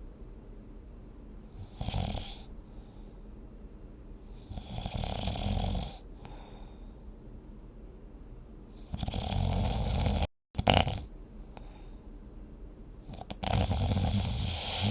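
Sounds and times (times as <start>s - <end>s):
soft breathing: 1.4s - 3.4s, 6.0s - 7.1s, 11.3s - 12.2s, 14.1s - 14.9s
person snoring: 1.6s - 2.5s, 4.5s - 6.0s, 8.9s - 11.7s, 13.1s - 14.9s.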